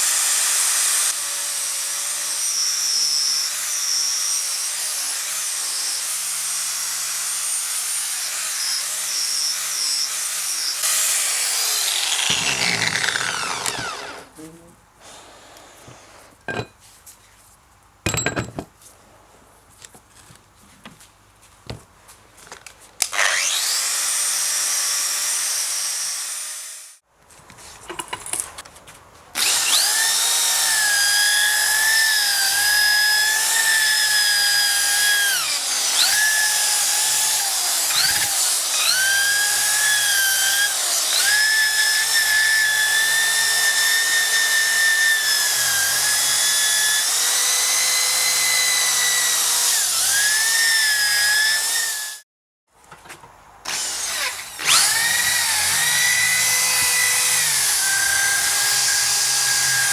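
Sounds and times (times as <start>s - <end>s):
power tool whining: 10.7s - 14.4s, 23.0s - 24.4s, 29.4s - 52.2s, 53.7s - 59.9s.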